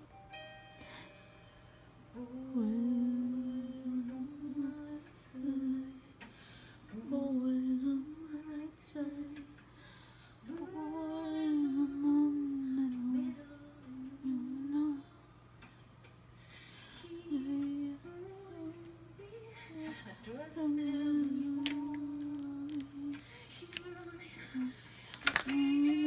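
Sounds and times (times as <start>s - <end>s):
woman singing slow melody: 0.8s - 15.5s, 16.4s - 26.0s
singer breathing: 6.3s - 6.9s, 9.7s - 10.4s, 16.4s - 17.1s, 23.2s - 23.6s.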